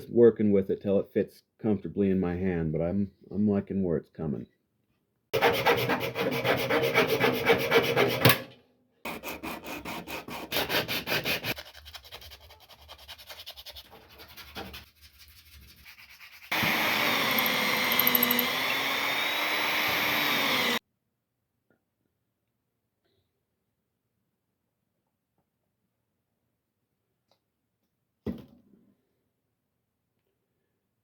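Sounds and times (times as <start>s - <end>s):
rasp strokes on wood: 5.4s - 8.2s, 9.1s - 18.4s
loud steady whirring: 16.5s - 20.8s.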